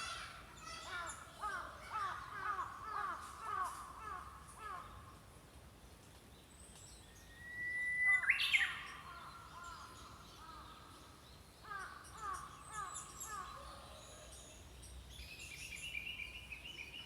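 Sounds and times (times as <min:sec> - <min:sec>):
small songbirds singing: 0:08.0 - 0:17.0.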